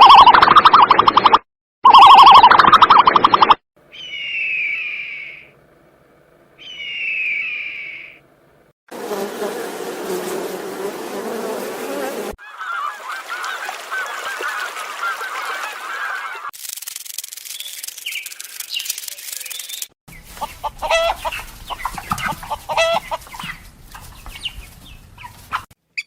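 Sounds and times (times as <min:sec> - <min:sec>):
quick wavering chirps: 0:00.0 - 0:05.5, 0:06.6 - 0:08.2, 0:16.6 - 0:19.9
dense buzzing: 0:08.9 - 0:12.4
animal calls falling in pitch: 0:12.4 - 0:16.5.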